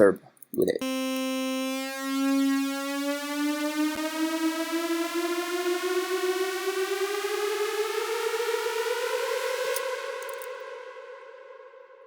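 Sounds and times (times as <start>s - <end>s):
synth riser gliding upward: 0.8s - 10.5s.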